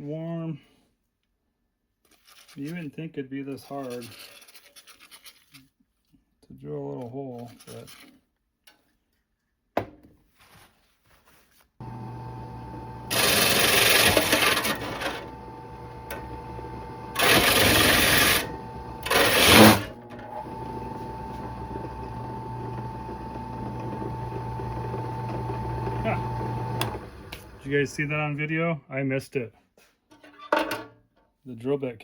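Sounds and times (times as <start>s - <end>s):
drill bit grinding loudly: 11.8s - 27.9s
drill press motor humming: 11.8s - 28.0s.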